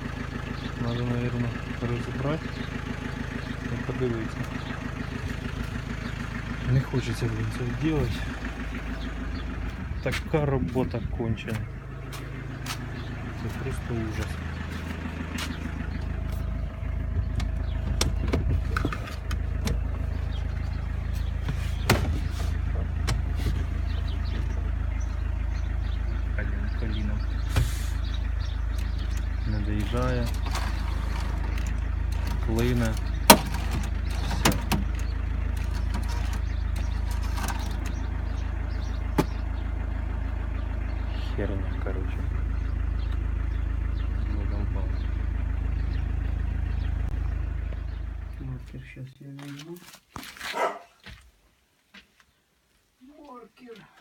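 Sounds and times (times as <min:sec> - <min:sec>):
car engine idling: 0:00.0 - 0:49.6
clicks and knocks from car door: 0:17.3 - 0:19.8, 0:21.8 - 0:22.3.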